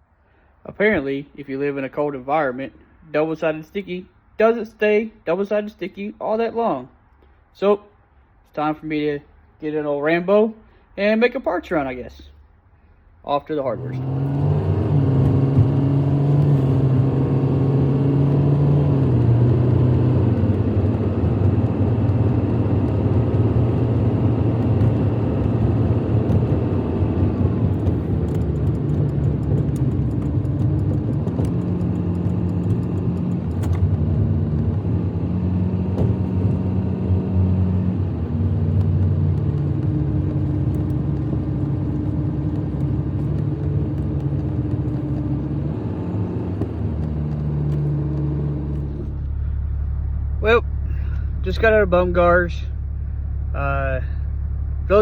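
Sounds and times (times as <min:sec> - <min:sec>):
road rumble: 0:00.0 - 0:55.0
car engine hum: 0:13.3 - 0:55.0.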